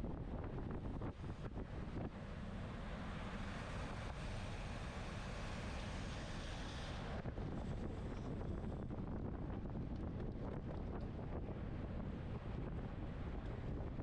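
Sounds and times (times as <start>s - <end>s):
wind buffeting microphone: 0.0s - 2.2s, 7.0s - 14.0s.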